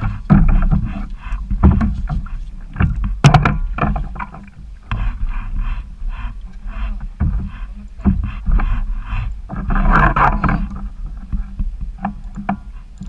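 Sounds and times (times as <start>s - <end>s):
water lapping against kayak: 0.0s - 13.0s.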